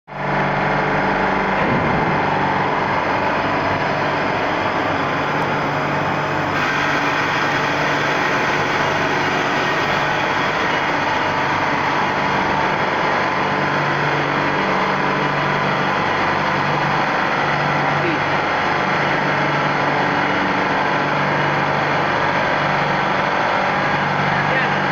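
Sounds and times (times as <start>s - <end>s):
ice machine drone: 0.1s - 24.9s.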